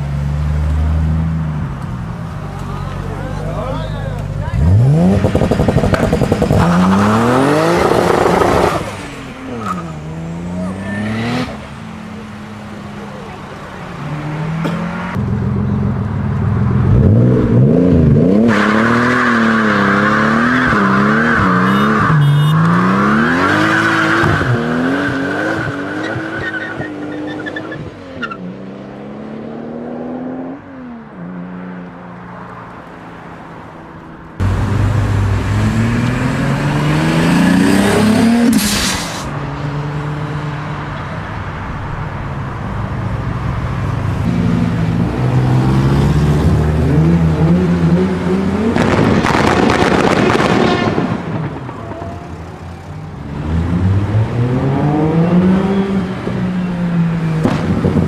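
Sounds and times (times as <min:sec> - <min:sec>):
car engine revving: 0:00.0 - 0:31.5, 0:34.4 - 0:40.8, 0:41.8 - 0:58.0
exhaust crack: 0:04.1 - 0:09.1, 0:48.4 - 0:52.8, 0:57.4 - 0:58.0.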